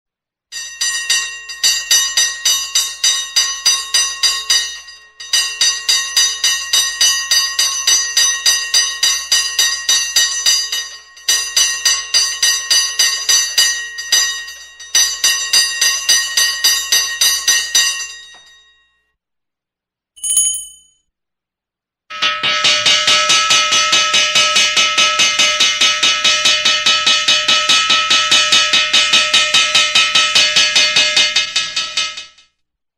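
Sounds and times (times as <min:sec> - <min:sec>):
short higher-pitched ring: 0:20.2 - 0:20.9
hand bell clanging: 0:20.2 - 0:21.0.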